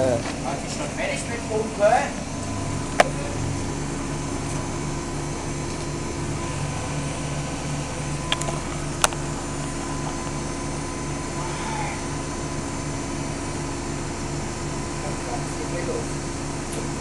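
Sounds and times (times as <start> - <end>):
washing machine running: 0.0 - 17.0.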